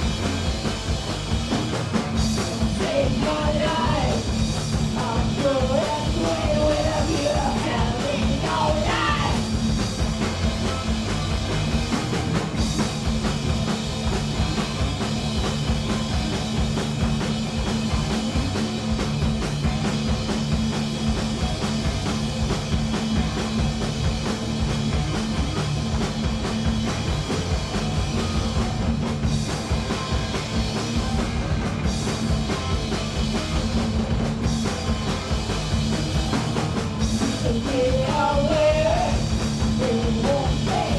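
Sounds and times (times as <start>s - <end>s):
punk rock band playing live: 0.0s - 40.9s
person singing: 37.4s - 39.2s.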